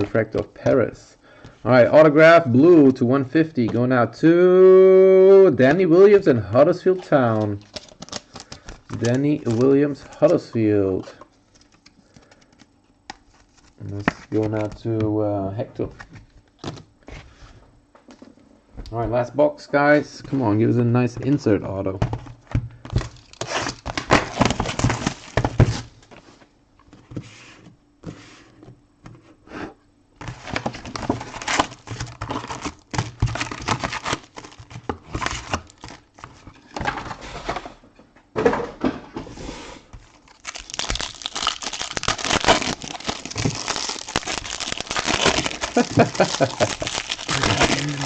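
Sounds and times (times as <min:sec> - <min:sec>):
wrapping crinkling and tearing: 0:06.9 - 0:10.6, 0:11.4 - 0:14.8, 0:23.0 - 0:25.9, 0:30.2 - 0:36.6, 0:40.0 - 0:48.0.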